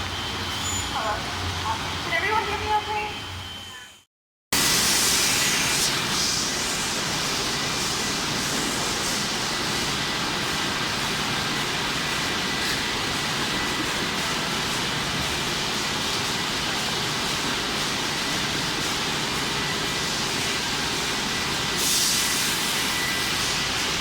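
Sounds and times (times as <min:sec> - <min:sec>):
factory machinery noise: 0:00.0 - 0:04.0, 0:04.6 - 0:24.0
sharp hiss of air: 0:04.6 - 0:10.0, 0:21.6 - 0:24.0.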